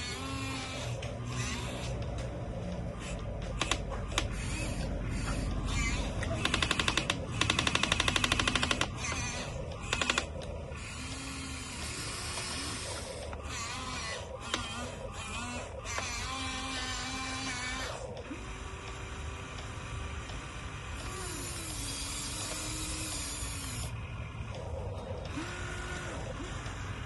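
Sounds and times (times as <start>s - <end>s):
excavator engine running: 0.0s - 27.0s
rapid clattering clicks: 5.5s - 10.6s.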